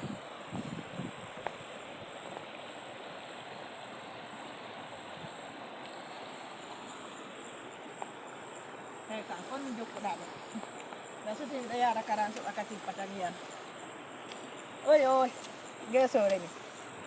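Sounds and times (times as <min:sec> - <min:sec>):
river water flowing: 0:01.2 - 0:17.0
high insect buzz: 0:05.7 - 0:17.0.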